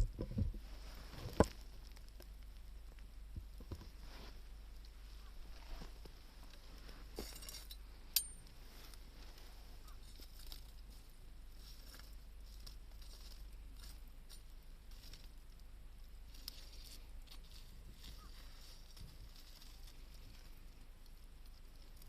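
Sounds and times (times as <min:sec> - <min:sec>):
wood fire crackling: 0:00.0 - 0:22.0
sharp ringing click: 0:08.2 - 0:08.4.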